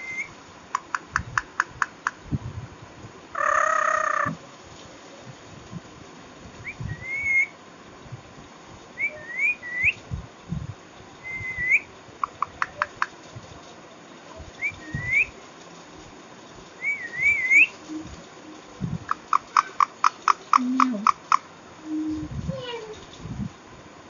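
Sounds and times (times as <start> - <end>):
parrot whistling: 0.0 - 0.3, 6.7 - 7.5, 9.0 - 10.0, 11.2 - 11.9, 14.6 - 15.3, 16.8 - 17.7.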